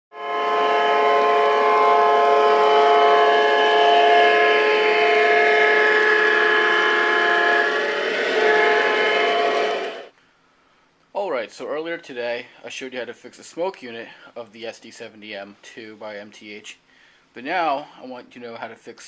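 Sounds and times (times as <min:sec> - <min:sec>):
locomotive horn blast: 0:00.1 - 0:10.1.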